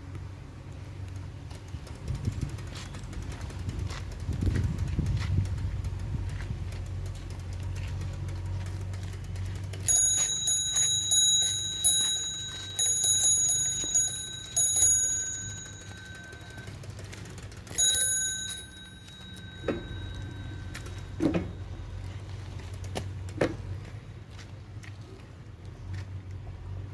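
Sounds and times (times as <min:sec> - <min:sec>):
faint clicks: 0:00.1 - 0:12.8
low hum: 0:08.7 - 0:23.0
bicycle bell ringing: 0:09.3 - 0:22.2.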